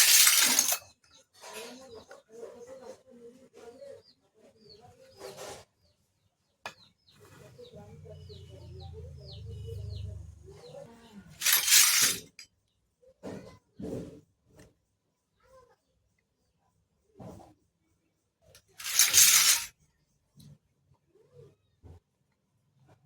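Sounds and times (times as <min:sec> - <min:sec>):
plastic toy pieces clicking: 0:00.0 - 0:01.0, 0:11.4 - 0:12.4, 0:18.6 - 0:19.7
packaging rustling: 0:18.8 - 0:19.7.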